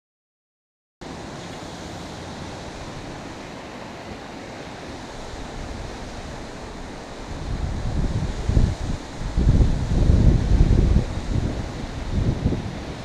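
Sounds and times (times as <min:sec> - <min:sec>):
river water rushing: 0:01.0 - 0:13.0
wind: 0:01.0 - 0:13.0
wind buffeting microphone: 0:04.9 - 0:13.0.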